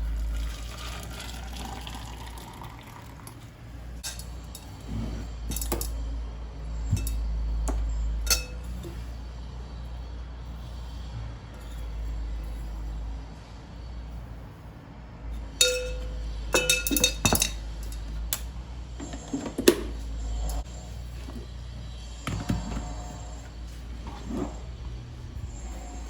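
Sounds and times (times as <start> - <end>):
steady low hum: 0.0 - 26.0
dishes clinking: 4.0 - 6.1, 6.8 - 9.1, 15.4 - 20.6.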